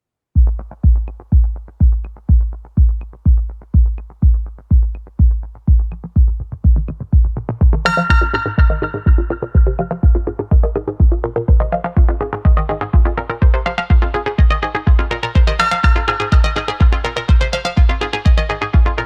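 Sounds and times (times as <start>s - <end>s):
deep kick-drum beat: 0.4s - 19.0s
electronic dance music: 0.4s - 19.0s
sustained synth chord: 7.8s - 17.2s.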